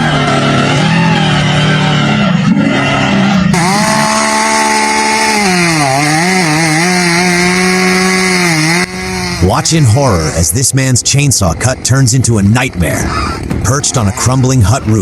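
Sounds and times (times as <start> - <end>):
chainsaw running at high revs: 3.5 - 10.4.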